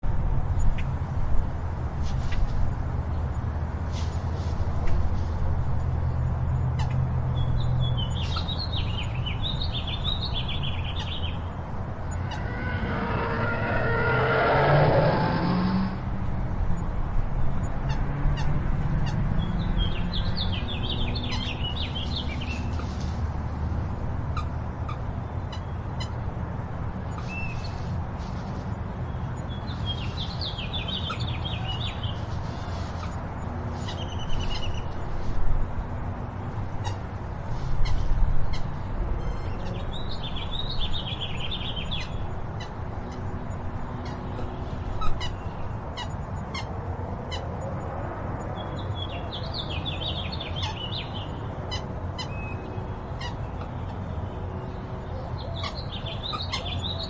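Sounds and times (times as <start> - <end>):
low outdoor ambience rumble: 0.0 - 57.0
high squeaky chirps: 12.1 - 15.9.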